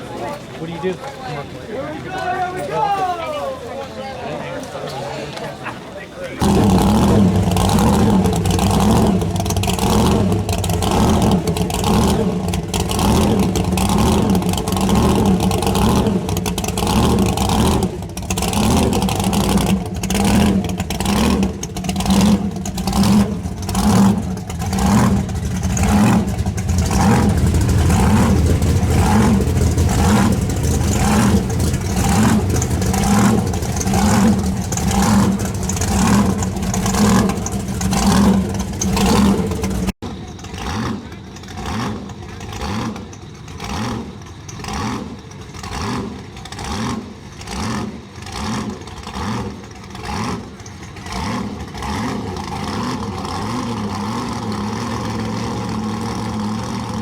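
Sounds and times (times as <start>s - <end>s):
loud racing car engine: 6.0s - 57.0s.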